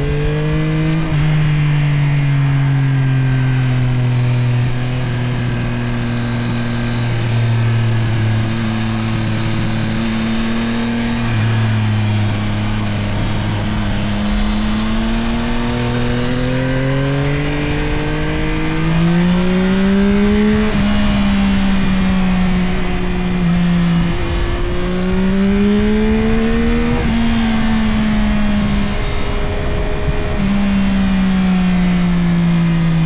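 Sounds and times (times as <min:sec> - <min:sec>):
motorcycle engine accelerating: 0:00.0 - 0:33.0.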